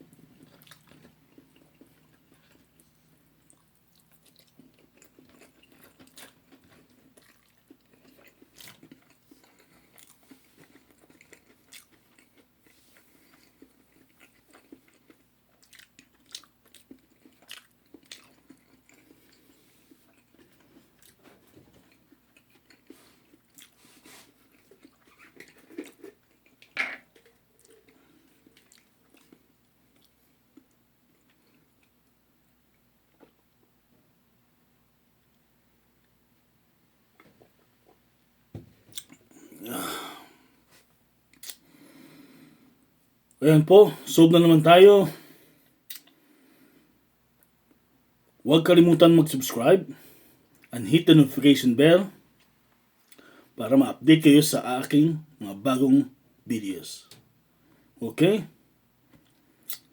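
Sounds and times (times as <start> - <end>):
person chewing crunchy food: 0.1 - 32.1, 38.9 - 42.3, 45.8 - 46.4
wet mouth clicks: 45.9 - 46.2, 59.7 - 59.9.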